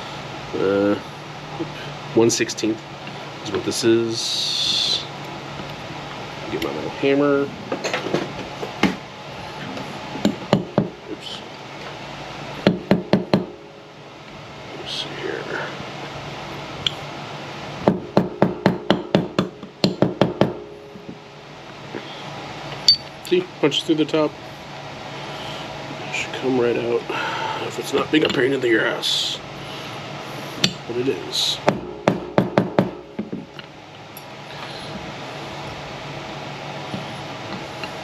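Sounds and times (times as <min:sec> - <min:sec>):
steady low hum: 0:00.0 - 0:38.0
hammer tapping metal punch: 0:17.9 - 0:21.2.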